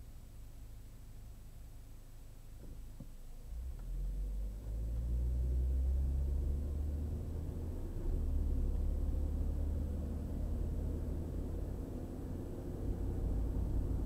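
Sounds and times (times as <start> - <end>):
car engine rumble: 0.0 - 14.0
road noise: 3.5 - 14.0.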